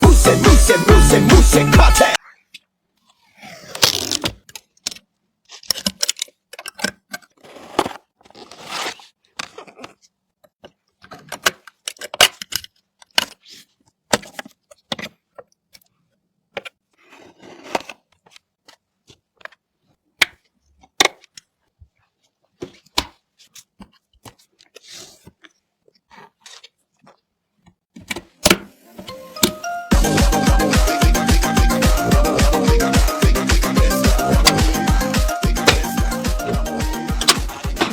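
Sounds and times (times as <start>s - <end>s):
packaging rustling and tearing: 3.6s - 4.5s, 7.3s - 10.0s.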